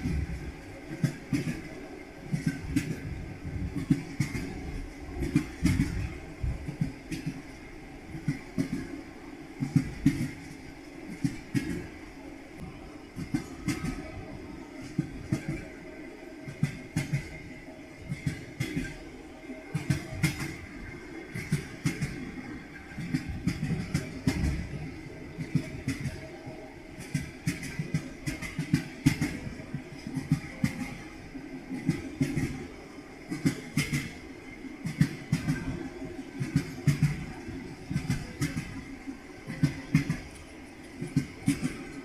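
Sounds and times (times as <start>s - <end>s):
train wheels knocking on rail joints: 0.0s - 7.5s, 8.1s - 9.0s, 9.6s - 12.0s, 16.5s - 19.0s, 19.7s - 26.3s, 27.0s - 31.1s, 33.3s - 34.2s, 36.4s - 38.9s, 39.5s - 40.4s, 41.0s - 42.0s
low rumble of moving train: 0.0s - 42.0s.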